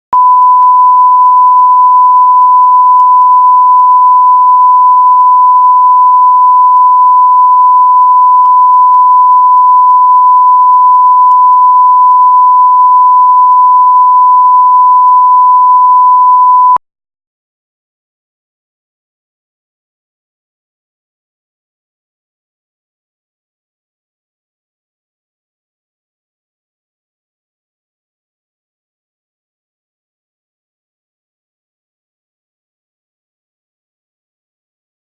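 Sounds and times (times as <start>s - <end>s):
steady test tone beep: 0.2s - 16.8s.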